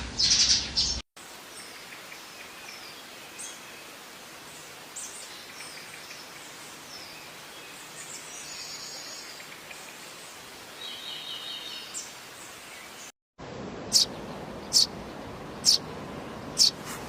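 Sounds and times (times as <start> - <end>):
sparrows chirping: 0.0 - 13.1, 13.8 - 17.0
steady hiss: 1.2 - 13.1.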